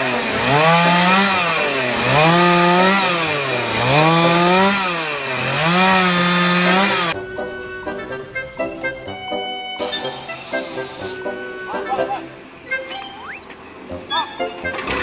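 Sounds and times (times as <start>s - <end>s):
small engine revving: 0.0s - 7.2s.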